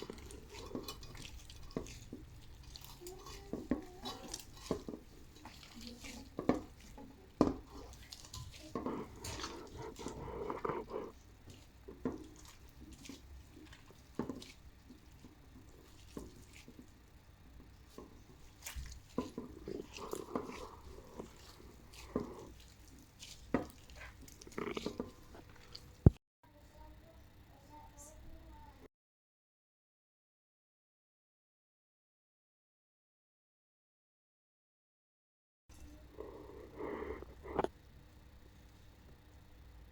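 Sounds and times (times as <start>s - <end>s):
stirring noises: 0.0s - 26.9s, 35.7s - 39.9s.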